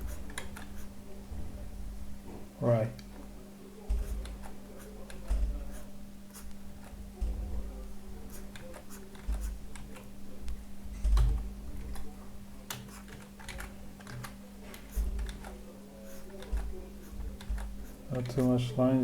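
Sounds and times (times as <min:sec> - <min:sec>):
steady low hum: 0:00.0 - 0:19.0
computer keys clicking: 0:11.0 - 0:12.1, 0:12.7 - 0:15.6.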